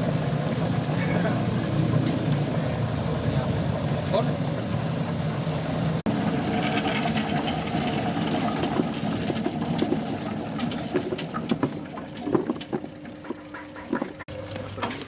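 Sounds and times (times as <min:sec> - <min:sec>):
machine motor running: 0:00.0 - 0:15.0
small knocks: 0:07.8 - 0:14.2.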